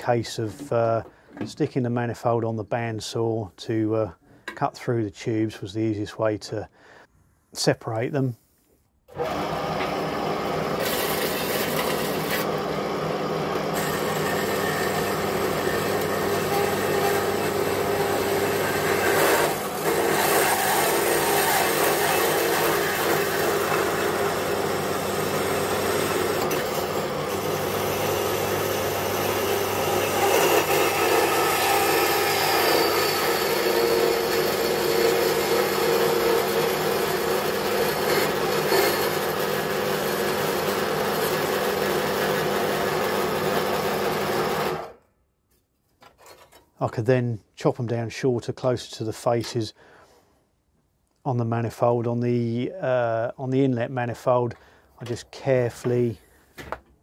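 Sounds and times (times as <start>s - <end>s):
bandsaw cutting metal tubes: 9.1s - 45.0s.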